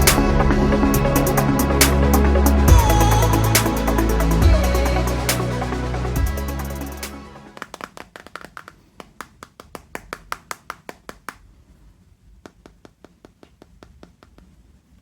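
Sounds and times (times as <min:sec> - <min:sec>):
hands tapping and clicking: 0:07.6 - 0:11.5, 0:12.4 - 0:14.7.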